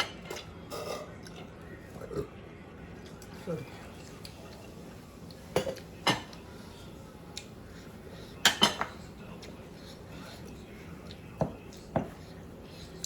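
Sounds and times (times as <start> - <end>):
cutlery clinking on plates: 5.5 - 6.4, 8.4 - 9.1, 11.4 - 12.2.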